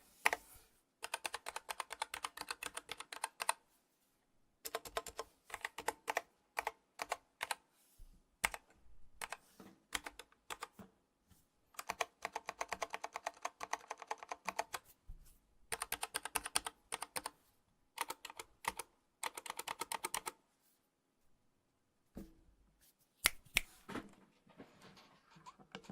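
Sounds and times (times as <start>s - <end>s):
mechanical keyboard typing: 1.0s - 3.6s, 4.6s - 7.6s, 8.4s - 10.8s, 11.8s - 14.8s, 15.7s - 17.3s, 18.0s - 20.4s.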